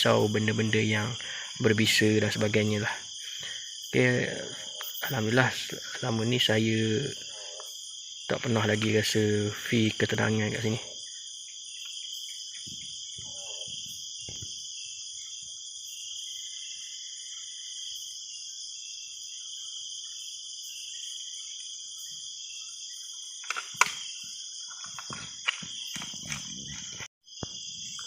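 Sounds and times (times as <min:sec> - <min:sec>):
night insects chorus: 0:00.0 - 0:28.0
sharp knocks or clicks: 0:23.4 - 0:24.1.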